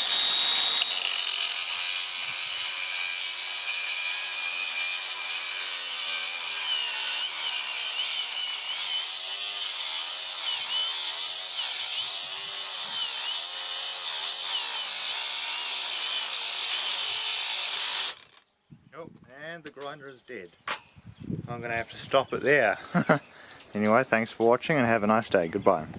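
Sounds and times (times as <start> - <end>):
stone grinder whining: 0.0 - 18.4.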